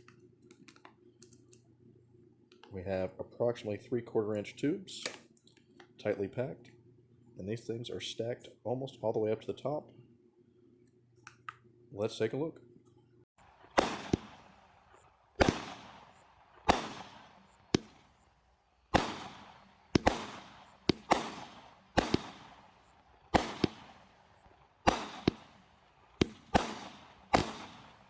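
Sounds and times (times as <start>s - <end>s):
firework cake bangs: 13.4s - 28.0s.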